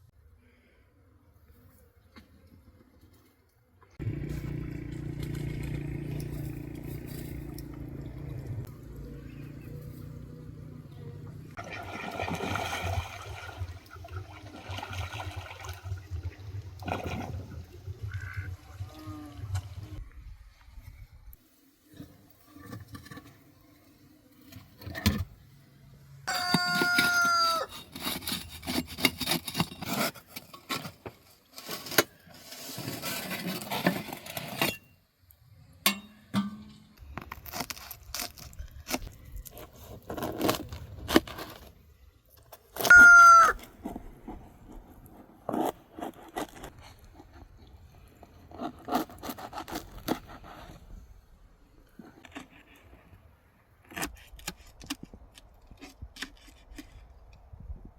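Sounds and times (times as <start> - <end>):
rooster crowing: 26.3 - 27.7, 42.9 - 43.6.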